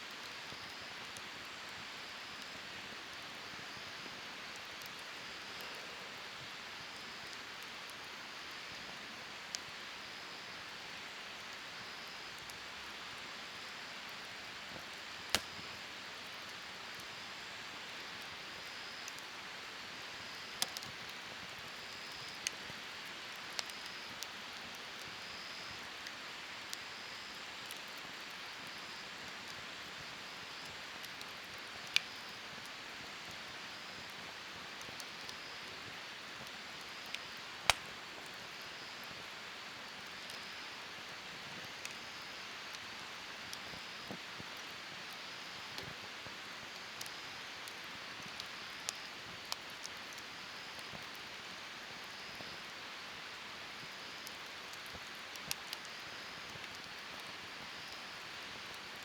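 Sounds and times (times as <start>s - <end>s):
campfire hissing: 0.1s - 59.0s
fire popping and crackling: 14.8s - 17.0s, 34.0s - 39.3s, 53.8s - 59.0s.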